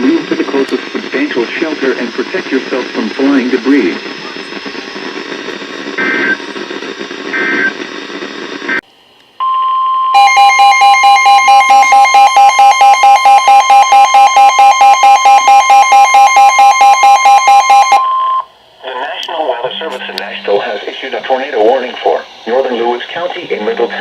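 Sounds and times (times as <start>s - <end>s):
steady warning alarm tone: 0.0s - 6.6s, 7.2s - 7.8s, 9.4s - 18.5s
radio static: 0.0s - 8.8s, 18.8s - 24.0s
pulsing beep: 6.0s - 6.4s, 7.3s - 7.8s, 9.4s - 18.4s.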